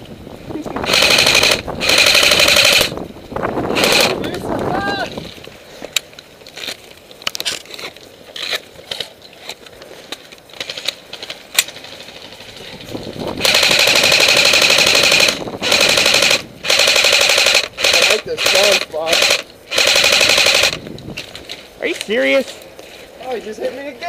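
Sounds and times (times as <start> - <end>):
airsoft gun firing bursts: 0.8 - 3.0, 3.7 - 4.2, 13.4 - 20.8.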